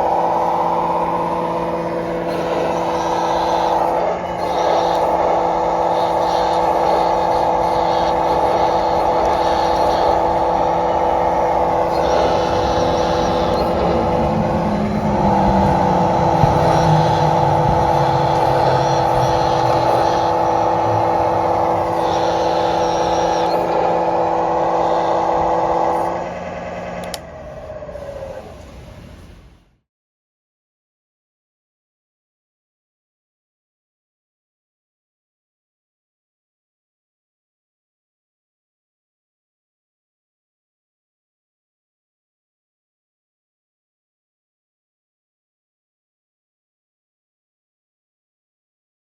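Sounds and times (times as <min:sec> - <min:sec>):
simulated diesel engine through speaker: 0:00.0 - 0:29.8
click: 0:27.0 - 0:27.3.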